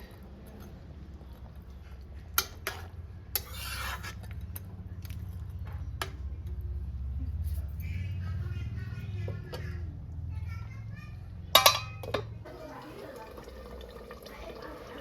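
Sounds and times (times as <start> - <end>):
utensil scraping a cooking pot: 1.8 - 5.2.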